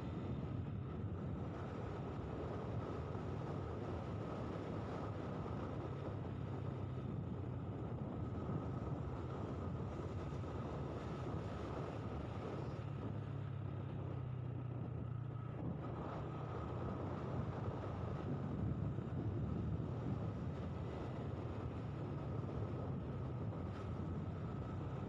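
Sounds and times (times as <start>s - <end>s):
wind noise: 15.6s - 25.0s.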